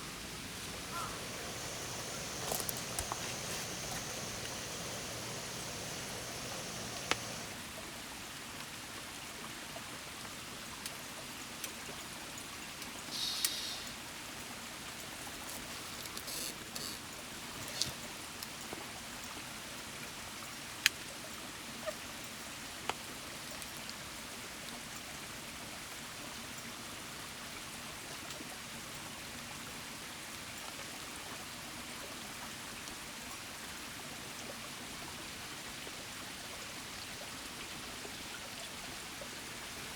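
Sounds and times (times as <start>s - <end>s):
stream babbling: 0.0s - 7.7s.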